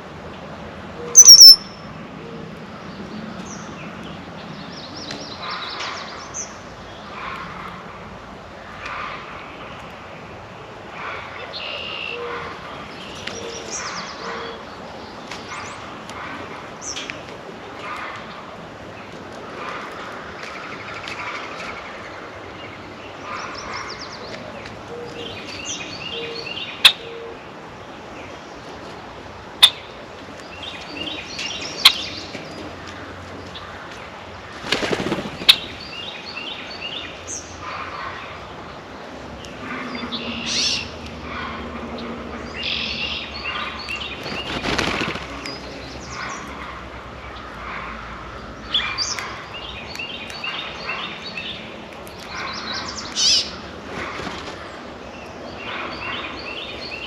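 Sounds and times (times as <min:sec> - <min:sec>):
small songbirds chirping: 0:01.0 - 0:01.9, 0:20.4 - 0:41.1, 0:41.9 - 0:57.0
wing flapping: 0:34.5 - 0:35.8, 0:44.1 - 0:45.8, 0:53.7 - 0:54.9.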